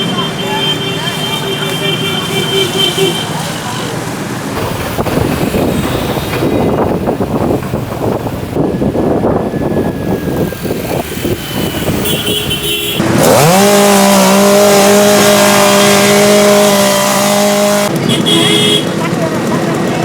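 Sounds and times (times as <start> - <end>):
rough noise: 0.0 - 18.3
engine rising in pitch: 13.0 - 18.2.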